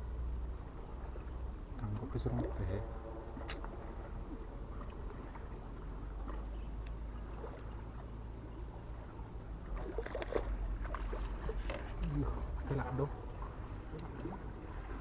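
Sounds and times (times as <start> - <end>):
steady low rumble: 0.0 - 15.0
water lapping: 0.0 - 15.0
small splashes and knocks: 3.3 - 8.2, 8.8 - 15.0.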